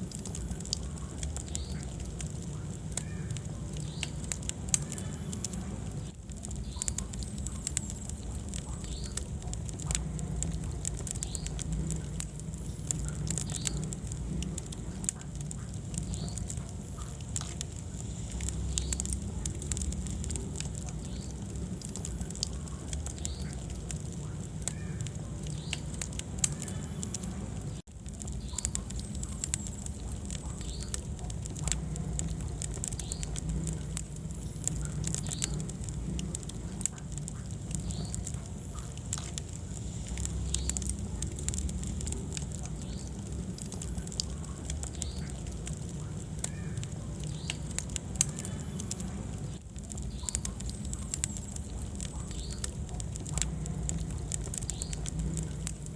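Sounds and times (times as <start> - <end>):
wood fire crackling: 0.0 - 55.9.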